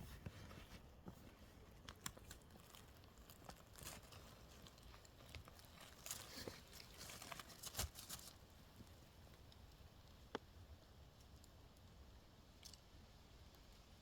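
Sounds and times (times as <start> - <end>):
quiet hiss: 0.0 - 14.0
twigs crunching and snapping: 1.8 - 10.5.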